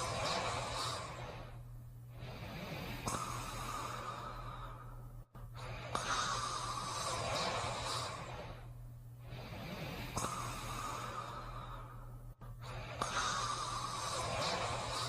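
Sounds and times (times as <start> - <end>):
rasping breathing of sleeper: 0.0 - 15.0
steady low hum: 0.0 - 15.0.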